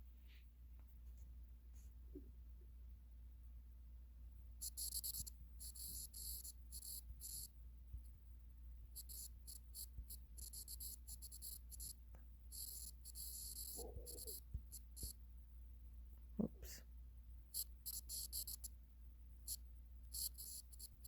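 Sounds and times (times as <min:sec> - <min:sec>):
steady low hum: 0:00.0 - 0:21.0
pen scratching on paper: 0:04.7 - 0:07.5, 0:09.0 - 0:15.1, 0:17.6 - 0:18.7, 0:20.1 - 0:21.0.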